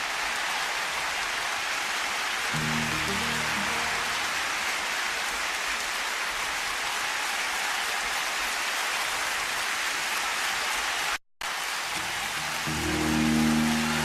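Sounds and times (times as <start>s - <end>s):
audience applauding: 0.0s - 14.0s.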